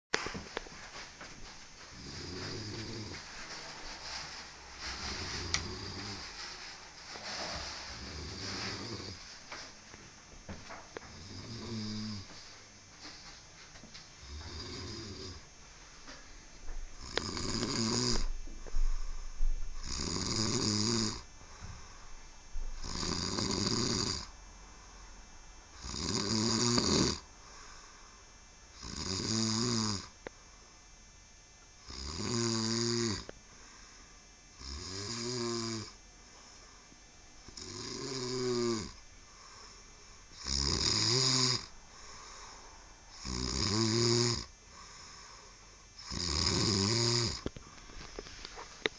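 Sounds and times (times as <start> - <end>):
person snoring: 1.9 - 3.3, 4.8 - 6.4, 7.7 - 9.2, 11.0 - 12.3, 14.2 - 15.5, 17.0 - 19.2, 19.8 - 22.0, 22.8 - 24.3, 25.7 - 28.2, 28.8 - 30.2, 31.8 - 36.0, 37.5 - 48.6.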